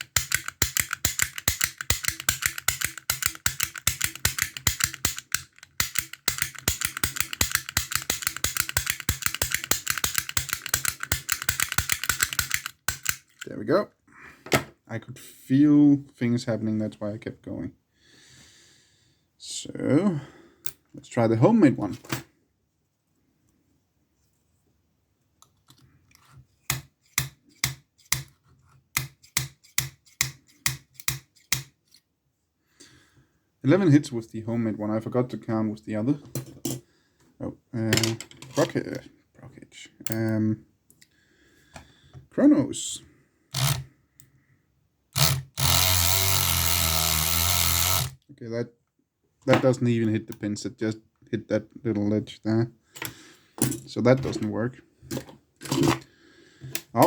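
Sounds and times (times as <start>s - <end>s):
lockpick gun snapping: 0.0s - 13.5s.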